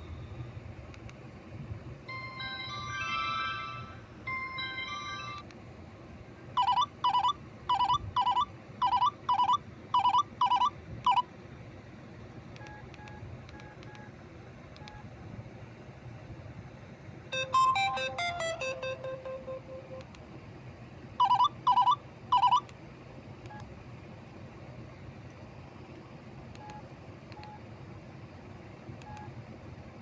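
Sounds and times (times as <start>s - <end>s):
electronic ringtone melody: 2.1s - 5.4s, 6.6s - 11.2s, 17.3s - 20.0s, 21.2s - 22.6s
warbling electronic beeps: 17.4s - 20.0s.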